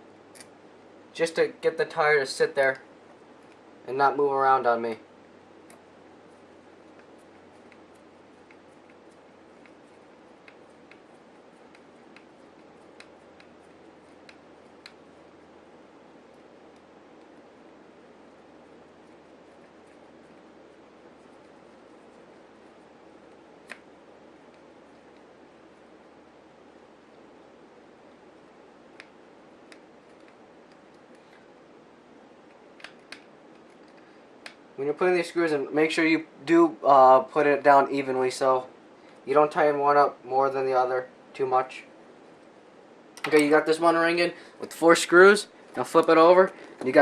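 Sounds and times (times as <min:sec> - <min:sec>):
steady low hiss: 0:00.0 - 0:47.0.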